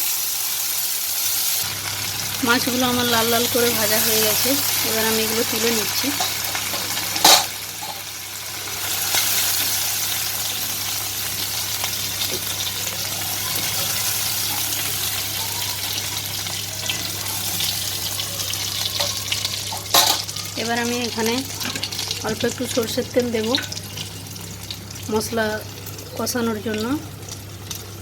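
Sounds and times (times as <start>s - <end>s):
hot oil sizzling: 0.0s - 28.0s.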